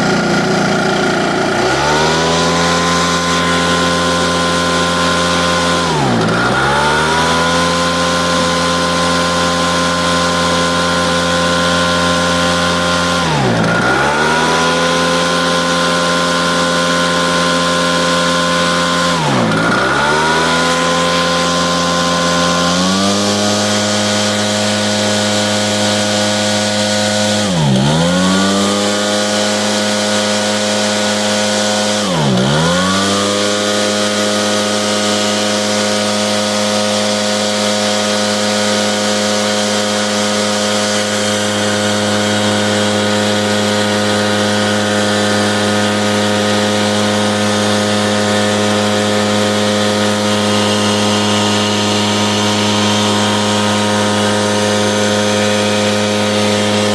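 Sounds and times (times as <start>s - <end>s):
leaf blower engine running: 0.0s - 56.9s.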